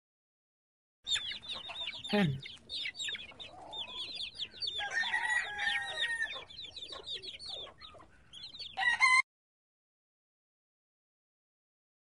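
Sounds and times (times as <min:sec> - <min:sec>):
chickens clucking: 0:01.1 - 0:08.9
rooster crowing: 0:04.7 - 0:06.5, 0:08.8 - 0:09.2.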